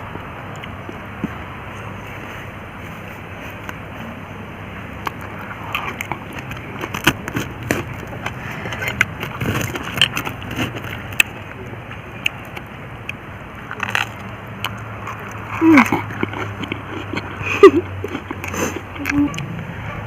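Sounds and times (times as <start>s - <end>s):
steady background noise: 0.0s - 20.0s.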